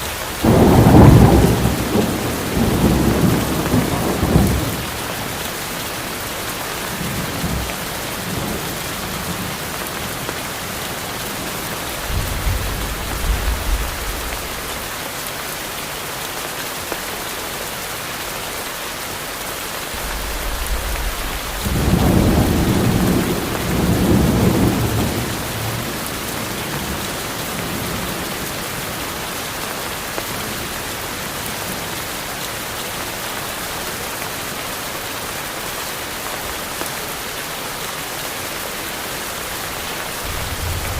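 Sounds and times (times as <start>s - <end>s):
heavy rain falling: 0.0s - 40.9s
thunder rumbling: 0.4s - 5.0s, 11.9s - 14.9s, 20.0s - 28.1s, 40.2s - 40.9s.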